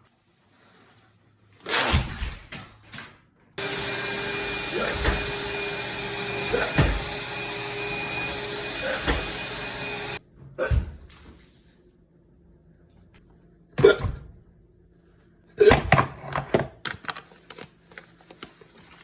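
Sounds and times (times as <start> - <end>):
vacuum cleaner running: 3.6 - 10.2.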